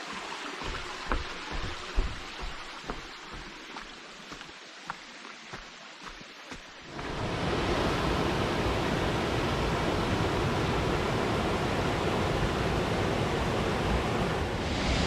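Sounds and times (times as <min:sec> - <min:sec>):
footsteps on trail: 0:00.0 - 0:06.9
river water rushing: 0:00.0 - 0:15.0.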